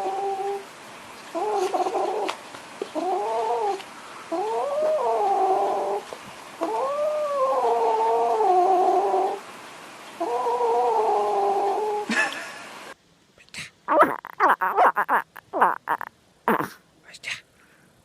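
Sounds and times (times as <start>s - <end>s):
cat yowling: 6.6s - 9.4s, 13.9s - 16.7s.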